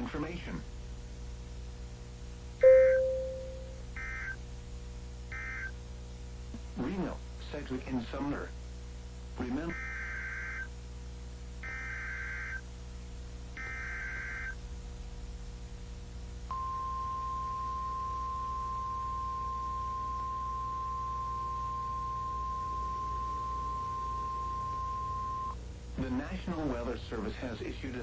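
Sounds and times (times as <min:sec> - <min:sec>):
steady warning alarm tone: 0:02.6 - 0:04.4, 0:05.4 - 0:05.7, 0:09.7 - 0:10.7, 0:11.6 - 0:12.6, 0:13.6 - 0:14.6, 0:16.5 - 0:25.6.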